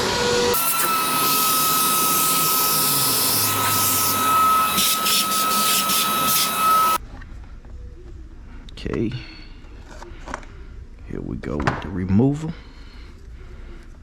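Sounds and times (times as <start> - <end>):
electric drill whining: 0.0 - 7.0.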